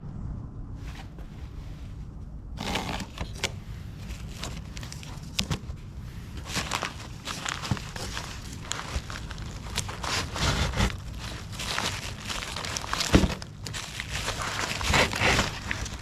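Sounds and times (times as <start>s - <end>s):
low steady rumble: 0.0s - 16.0s
parts and tools being handled: 2.6s - 16.0s.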